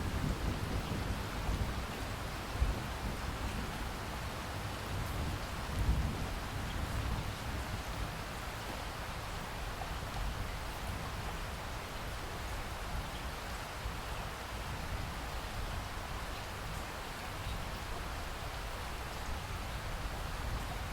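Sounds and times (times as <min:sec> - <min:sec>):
low rumble of thunder: 0:00.0 - 0:08.4
steady rain falling: 0:00.0 - 0:20.9.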